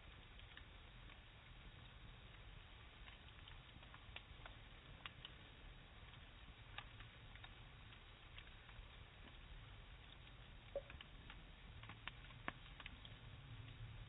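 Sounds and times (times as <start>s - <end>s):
campfire crackling: 0.0s - 14.0s
low background hum: 0.2s - 14.0s.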